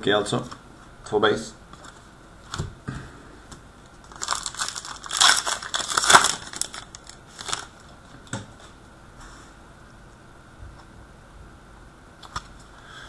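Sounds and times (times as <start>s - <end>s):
foil wrapper crinkling and tearing: 4.0s - 7.9s.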